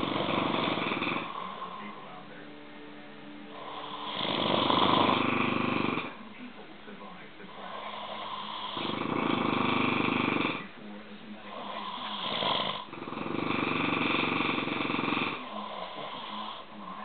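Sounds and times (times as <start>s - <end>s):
dog snorting: 0.0s - 2.0s, 3.6s - 6.2s, 7.5s - 10.7s, 11.4s - 17.0s
dog snoring: 0.0s - 2.2s, 3.5s - 6.3s, 7.4s - 17.0s.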